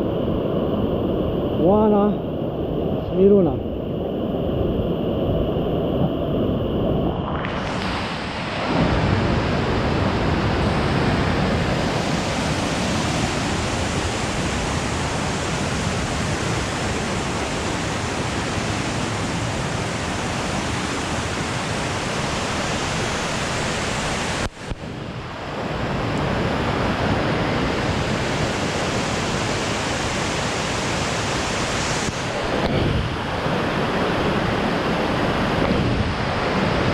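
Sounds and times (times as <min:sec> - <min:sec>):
waterfall rushing: 0:07.5 - 0:24.7, 0:25.3 - 0:36.9.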